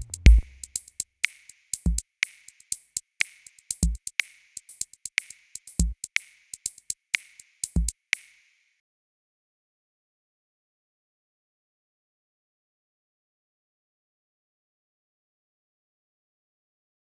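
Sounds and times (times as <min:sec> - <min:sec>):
deep kick drum: 0:00.0 - 0:00.7
electronic music with drum machine: 0:00.0 - 0:08.4.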